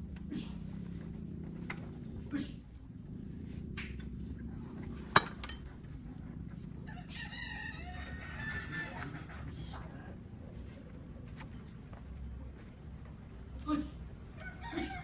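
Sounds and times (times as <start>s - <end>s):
low steady hum: 0.0s - 15.0s
rooster crowing: 6.9s - 9.2s, 14.4s - 15.0s.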